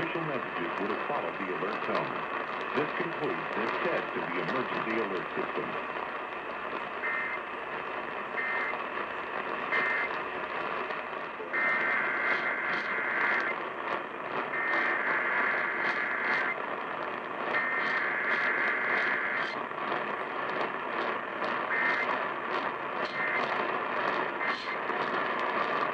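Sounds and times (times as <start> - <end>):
radio hiss and crackle: 0.0 - 25.9
warbling data tone bursts: 7.0 - 7.5, 9.7 - 10.1, 11.5 - 13.6, 14.5 - 16.6, 17.5 - 19.6, 21.6 - 22.2, 23.0 - 23.6.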